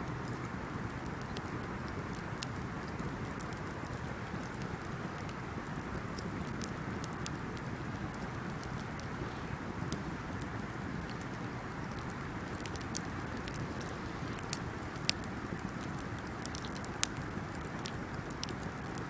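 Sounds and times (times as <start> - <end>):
fire crackles and pops: 0.0 - 19.0
wood fire rustling: 0.0 - 19.0.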